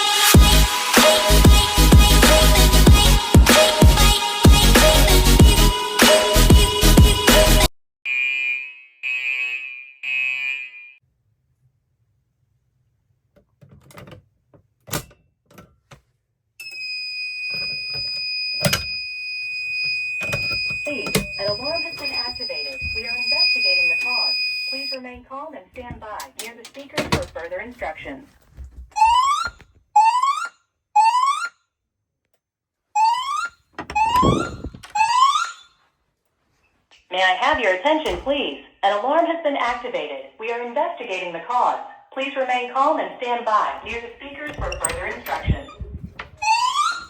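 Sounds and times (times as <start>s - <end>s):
fire alarm tone: 8.1s - 11.0s, 16.6s - 25.2s, 29.0s - 31.5s, 33.0s - 35.8s, 46.4s - 47.0s
fire alarm whoop sweeps: 18.3s - 25.0s, 46.4s - 47.0s.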